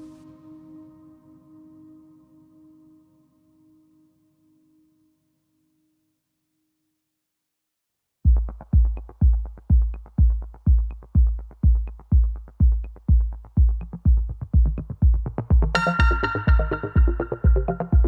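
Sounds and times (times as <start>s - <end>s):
kick drum beat: 8.2s - 18.0s
sustained synthesizer tones: 15.7s - 18.0s.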